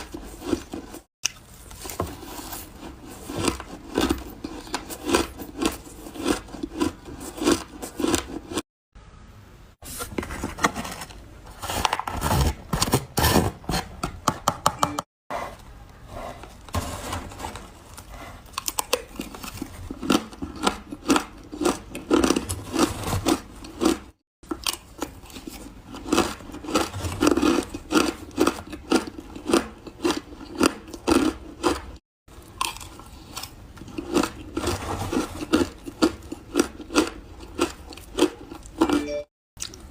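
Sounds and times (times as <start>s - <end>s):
ice being chewed: 0.0s - 8.6s, 17.8s - 39.9s.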